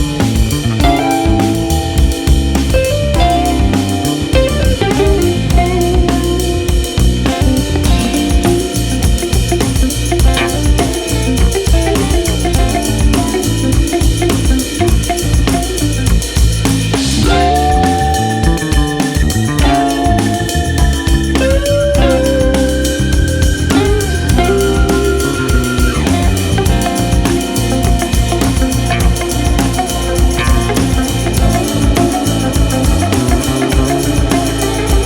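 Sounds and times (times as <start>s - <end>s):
bass line: 0.0s - 35.0s
drum kit beat: 0.0s - 35.0s.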